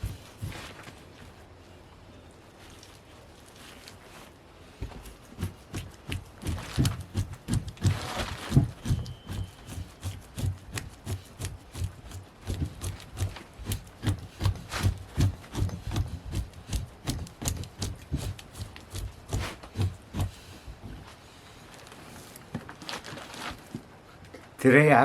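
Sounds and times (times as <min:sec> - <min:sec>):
hand tool scraping hide: 0:00.0 - 0:01.0, 0:04.8 - 0:21.3.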